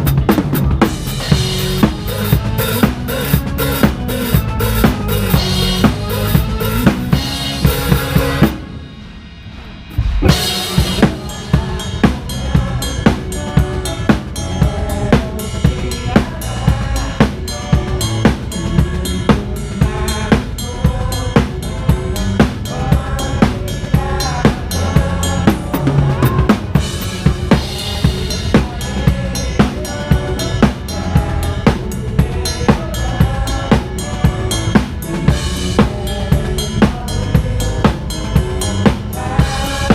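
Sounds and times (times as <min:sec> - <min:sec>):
kick and snare drum beat: 0:00.0 - 0:08.6
live band playing: 0:00.0 - 0:39.9.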